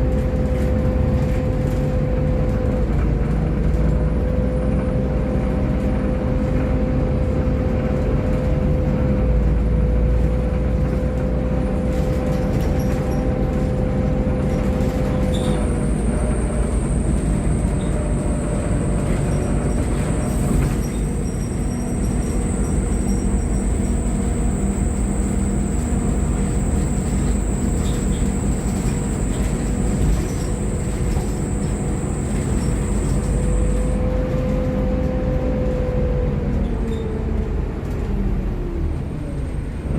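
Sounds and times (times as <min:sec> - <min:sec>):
bus diesel engine droning: 0:00.0 - 0:39.9
mid-pitched whine: 0:15.7 - 0:34.0
thin high whine: 0:15.7 - 0:34.0.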